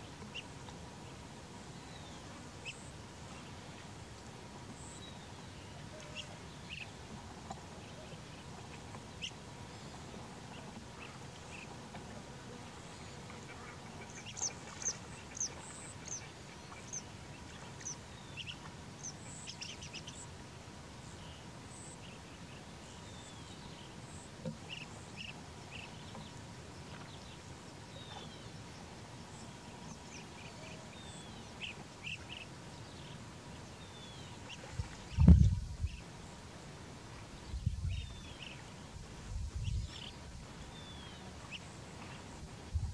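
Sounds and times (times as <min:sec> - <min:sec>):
faint outdoor hiss: 0:00.0 - 0:42.9
birds chirping: 0:12.8 - 0:20.3.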